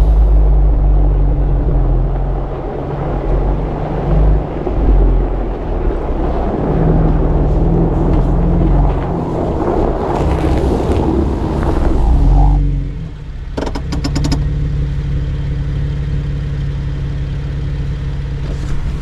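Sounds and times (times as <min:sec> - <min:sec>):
vehicle engine and road noise: 0:00.0 - 0:19.0
rapid rattle of clicks: 0:13.6 - 0:14.5.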